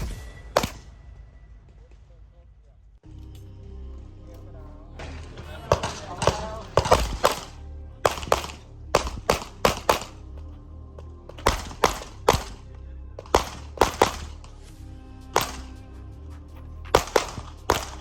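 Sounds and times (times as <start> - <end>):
handgun shots: 0.0 - 0.9, 5.0 - 10.4, 11.3 - 14.6, 15.4 - 16.0, 16.9 - 18.0
rap music with bass line: 3.1 - 18.0.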